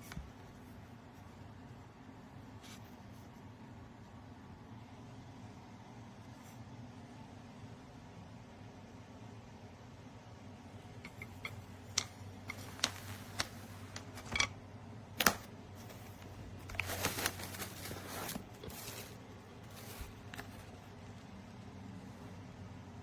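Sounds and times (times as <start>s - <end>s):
rustling: 11.0s - 21.1s.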